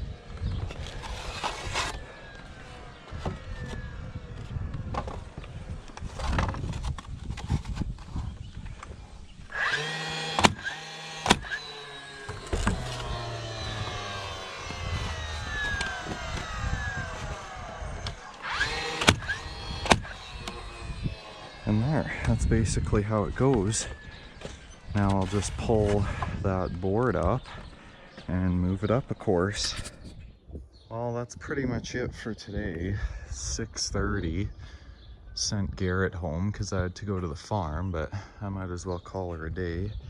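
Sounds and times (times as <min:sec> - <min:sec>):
shingles scraping and clattering: 0:00.6 - 0:03.4
stapler firing staples into wood: 0:09.6 - 0:17.2, 0:18.0 - 0:21.7.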